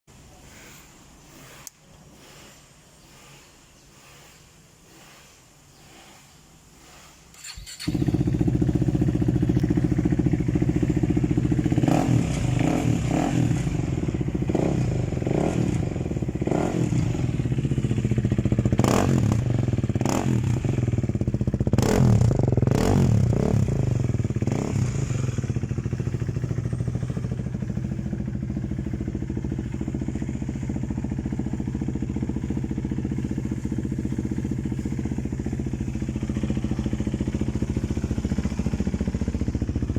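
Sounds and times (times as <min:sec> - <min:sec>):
motorcycle engine idling: 0:01.2 - 0:39.9
motorcycle engine starting: 0:01.4 - 0:39.9
engine revving in throttle blips: 0:07.3 - 0:39.9.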